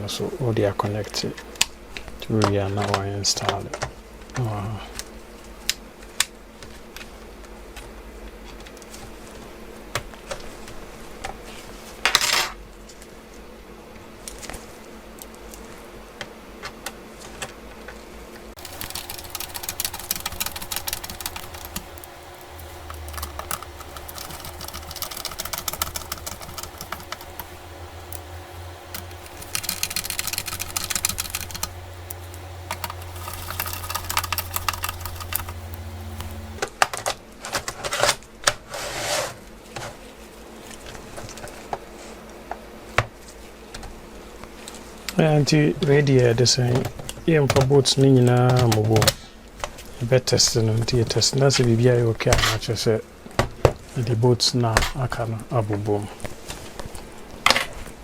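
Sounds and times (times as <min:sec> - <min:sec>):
steady low hum: 0:18.3 - 0:36.6
laptop parts clicking: 0:18.6 - 0:36.6.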